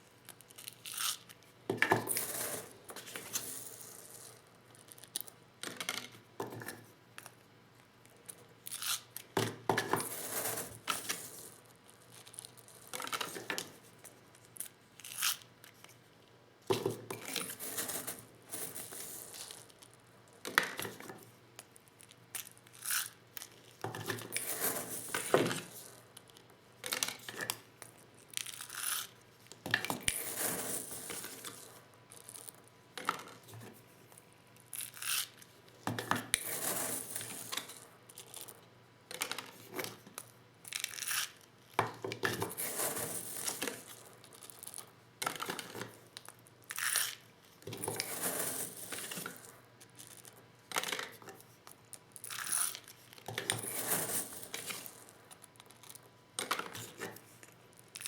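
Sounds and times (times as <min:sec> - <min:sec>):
rattling and scraping handling: 0:47.7 - 0:49.5, 0:53.3 - 0:55.1.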